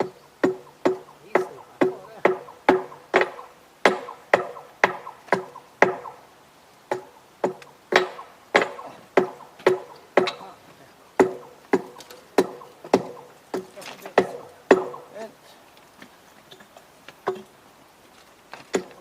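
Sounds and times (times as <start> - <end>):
sharp ringing knocks: 0.0 - 6.2, 6.9 - 10.6, 11.2 - 15.2.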